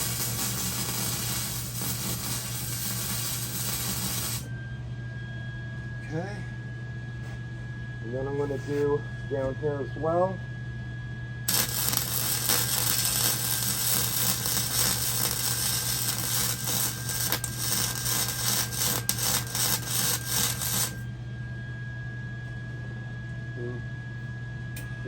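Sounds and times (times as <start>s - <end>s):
welding arc crackling and hissing: 0.0s - 4.5s, 11.5s - 21.0s
steady low hum: 0.0s - 25.0s.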